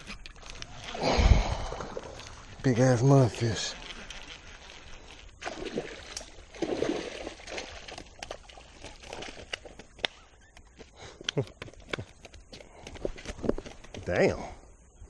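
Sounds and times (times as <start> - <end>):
water splashing and sloshing: 0.0 - 10.2.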